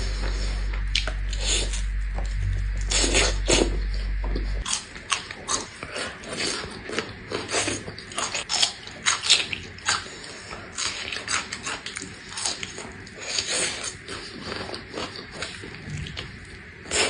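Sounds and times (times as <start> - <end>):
low steady hum: 0.0 - 17.0
chewing and biting meat: 4.6 - 16.6.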